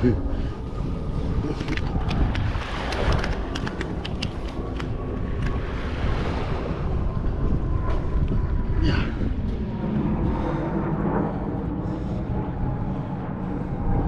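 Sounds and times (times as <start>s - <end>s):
water and surf: 0.0s - 10.7s
wind buffeting microphone: 0.0s - 14.0s
light clicks: 1.6s - 5.6s.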